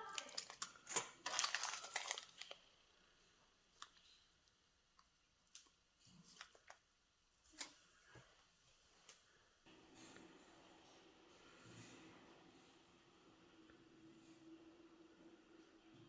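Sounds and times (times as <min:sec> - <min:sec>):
plastic packets crinkling: 0:00.0 - 0:02.8.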